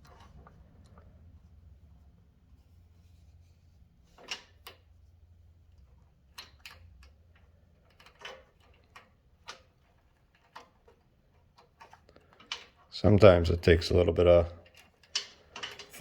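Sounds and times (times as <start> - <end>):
metallic clicks and knocks: 6.3 - 12.9, 14.6 - 16.0.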